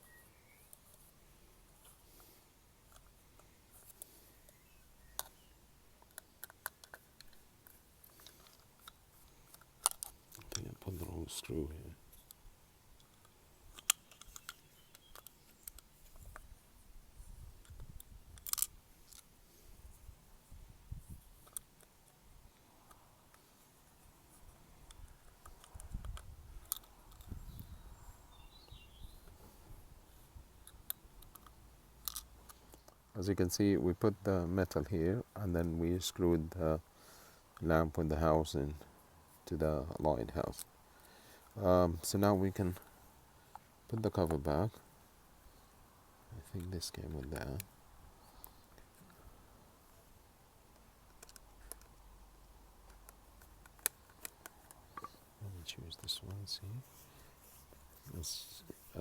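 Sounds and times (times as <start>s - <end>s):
clicks of small plastic parts: 5.2s - 5.4s, 6.0s - 10.6s, 13.0s - 16.5s, 17.6s - 19.3s, 30.6s - 33.0s, 51.0s - 52.0s, 52.8s - 55.2s.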